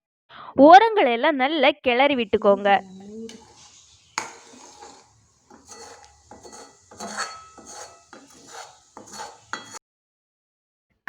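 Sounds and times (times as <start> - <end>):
spoon scraping a pan: 2.4 - 9.8
spoon clinking: 2.9 - 9.8.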